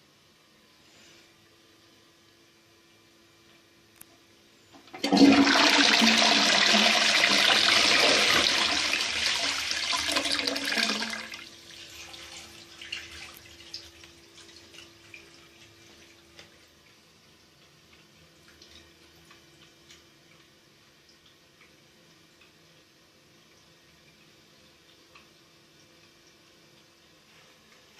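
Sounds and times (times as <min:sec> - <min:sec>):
toilet flushing: 0:04.8 - 0:16.8
water trickling and dripping: 0:11.3 - 0:27.9.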